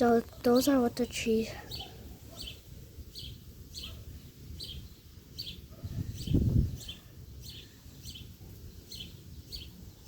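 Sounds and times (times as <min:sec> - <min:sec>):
bird chirping: 0:00.0 - 0:10.0
wind rumbling on microphone: 0:01.9 - 0:10.0.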